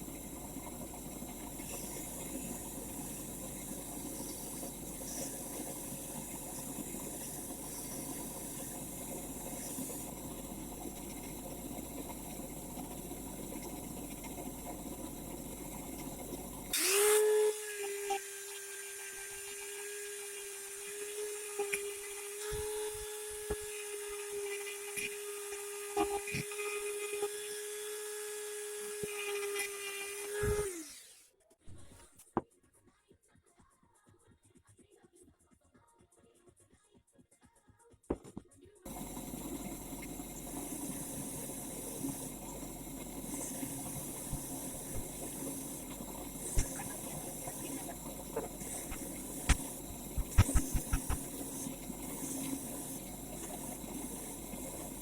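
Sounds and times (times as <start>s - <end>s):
steady hiss: 0.0s - 16.7s, 38.9s - 55.0s
electric power tool whining: 16.7s - 31.2s.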